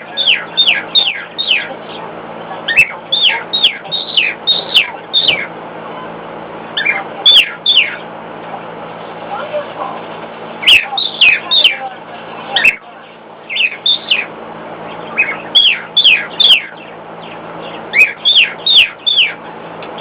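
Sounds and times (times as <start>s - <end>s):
cockatiel whistling: 0.2s - 1.7s, 2.7s - 5.5s, 6.8s - 8.0s, 10.6s - 11.8s, 13.5s - 14.3s, 15.2s - 16.8s, 17.9s - 19.4s.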